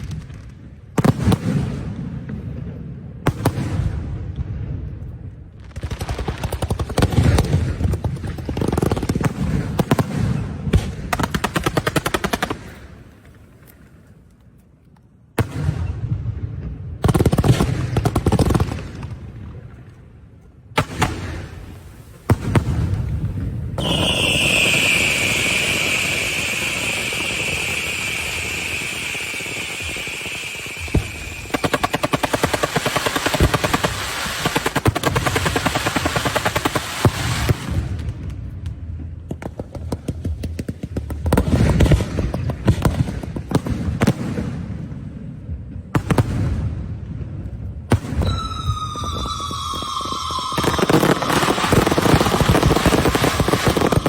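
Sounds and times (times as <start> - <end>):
fireworks bangs: 20.8 - 44.9, 47.9 - 54.0
steady hiss: 23.2 - 32.6
firework whistle falling in pitch: 23.8 - 31.8, 48.1 - 54.0
fast crackling: 23.8 - 37.0, 48.4 - 54.0.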